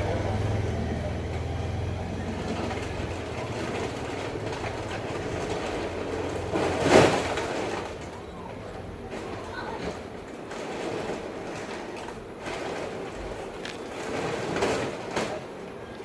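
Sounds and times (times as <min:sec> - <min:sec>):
passing vehicle rumble: 0:00.0 - 0:06.9.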